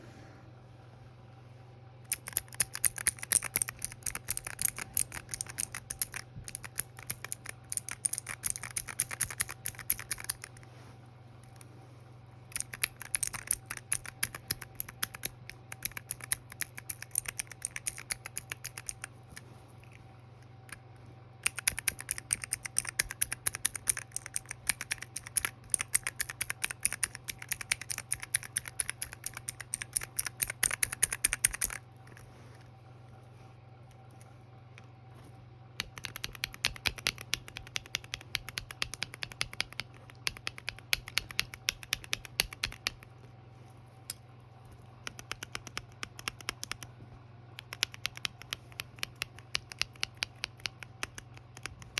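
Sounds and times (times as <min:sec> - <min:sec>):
faint steady hum: 0:00.0 - 0:51.9
keycap clickers clacking: 0:02.1 - 0:10.6, 0:12.5 - 0:20.0, 0:21.4 - 0:32.2, 0:35.8 - 0:43.1, 0:45.0 - 0:46.8, 0:47.6 - 0:51.9.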